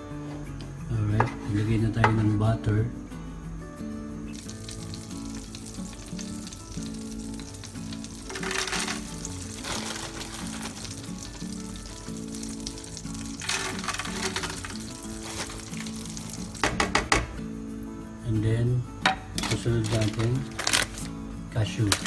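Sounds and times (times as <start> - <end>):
butter sizzling in a pan: 4.2 - 16.7.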